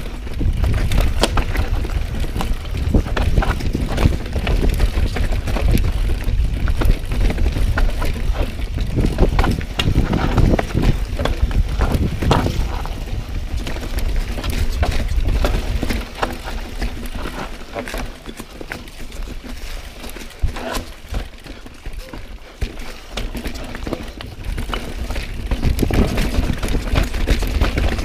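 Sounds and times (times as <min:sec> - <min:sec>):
wind buffeting microphone: 0:00.0 - 0:17.4, 0:24.1 - 0:28.0
mountain bike rattling over rocks: 0:00.0 - 0:28.0
wheels knocking on rocks: 0:00.0 - 0:28.0.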